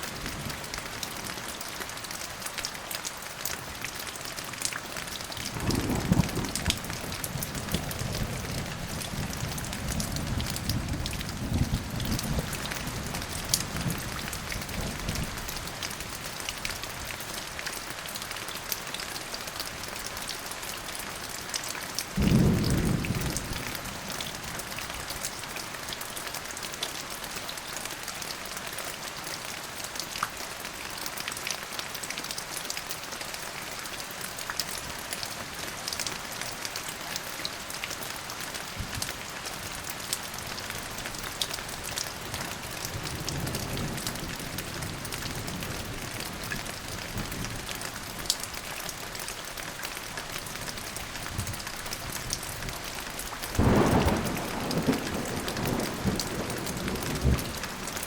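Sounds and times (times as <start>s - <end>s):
steady rain falling: 0.0s - 58.0s
loud thunderclap: 53.6s - 57.8s
low thunder rumble: 53.6s - 57.9s.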